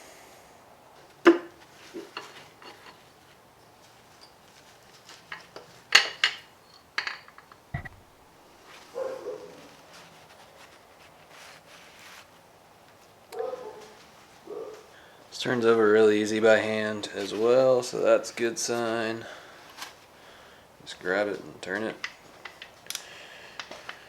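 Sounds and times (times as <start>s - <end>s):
dull low thump: 7.8s - 8.3s.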